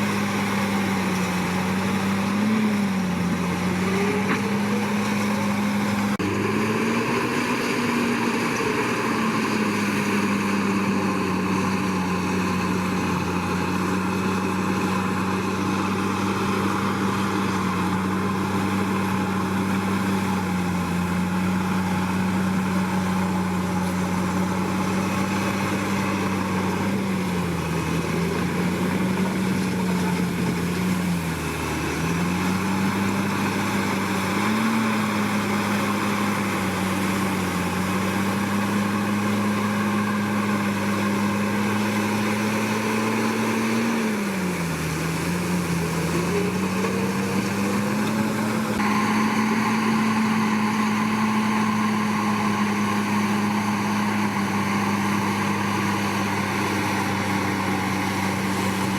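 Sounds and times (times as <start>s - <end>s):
bulldozer diesel engine running: 0.0s - 58.9s.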